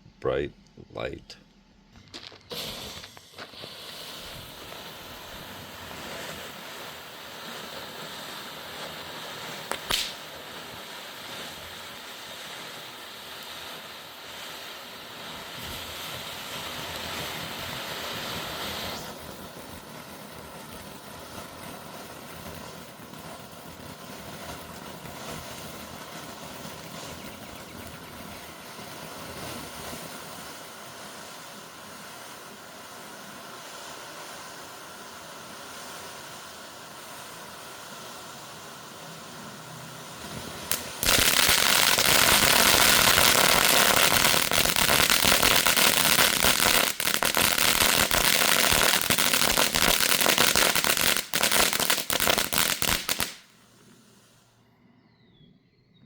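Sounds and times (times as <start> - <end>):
firework fountain crackling: 2.1 - 54.4.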